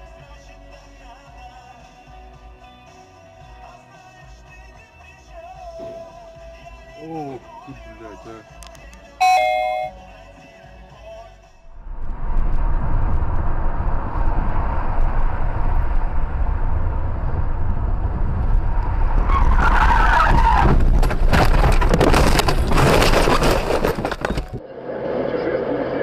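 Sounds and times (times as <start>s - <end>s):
road rumble: 11.4s - 26.0s
tyres squealing in a skid: 19.0s - 24.6s
clatter of knocks and scraping: 20.3s - 24.6s.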